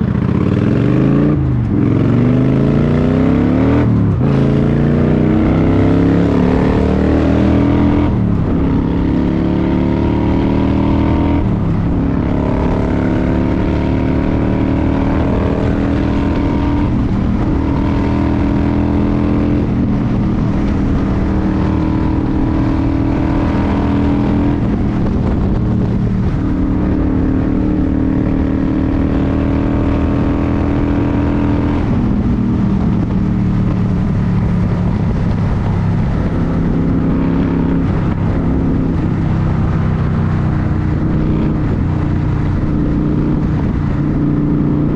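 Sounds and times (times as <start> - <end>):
vehicle engine running under load: 24.3 - 28.0, 31.8 - 44.9.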